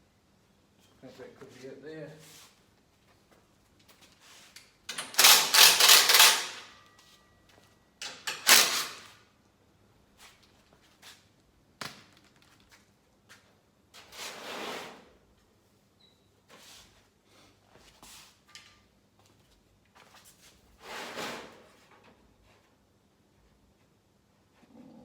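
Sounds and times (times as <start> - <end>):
scraping on steel: 20.8 - 21.9.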